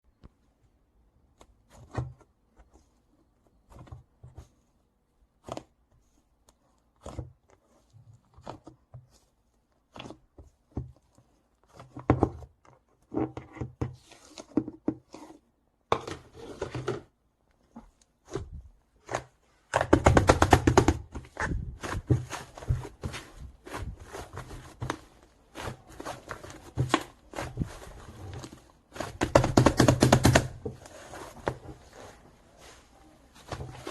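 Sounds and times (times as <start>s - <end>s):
slime squelching and crackling: 18.1s - 33.9s.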